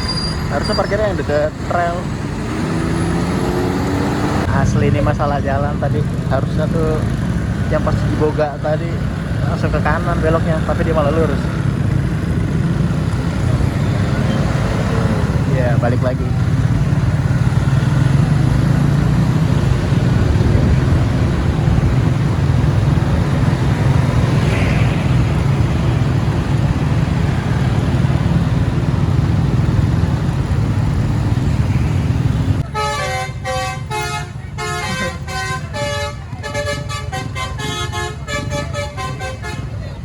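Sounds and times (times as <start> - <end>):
vehicle engine and road rumble: 0.0 - 40.0
bus multi-tone air horn tune: 32.6 - 39.8.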